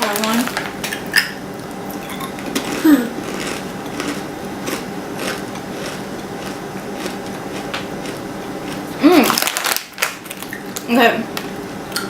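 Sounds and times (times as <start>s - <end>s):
crunching crispy snack: 2.5s - 10.9s.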